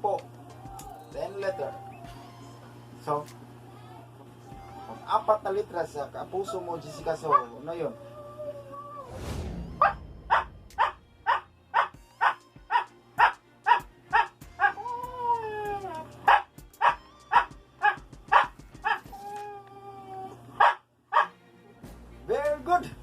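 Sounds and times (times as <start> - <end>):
dog barking: 6.4 - 7.6, 10.3 - 14.8, 16.3 - 19.0, 20.6 - 21.4.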